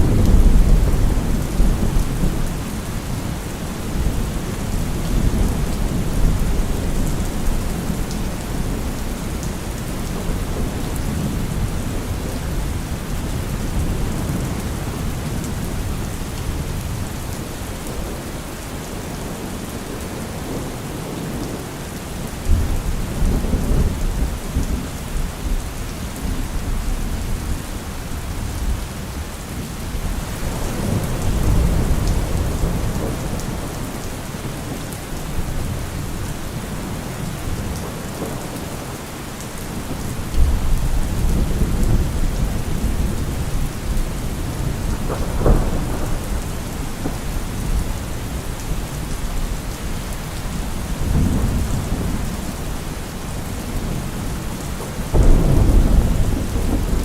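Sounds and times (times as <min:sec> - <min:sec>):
low thunder rumbling: 0:00.0 - 0:18.2, 0:39.7 - 0:57.0
steady rain falling: 0:00.0 - 0:57.0.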